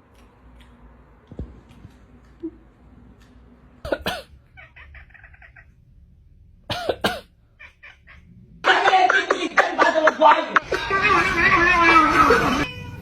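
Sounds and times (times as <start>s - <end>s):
animal crying loudly: 4.6s - 5.8s, 7.6s - 8.4s.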